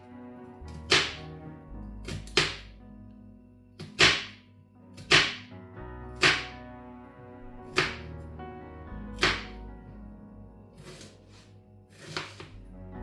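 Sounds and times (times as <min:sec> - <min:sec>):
soft background music: 0:00.0 - 0:13.0
sharp slapping hits: 0:00.9 - 0:01.2, 0:03.8 - 0:04.4, 0:05.0 - 0:05.5, 0:06.2 - 0:06.5.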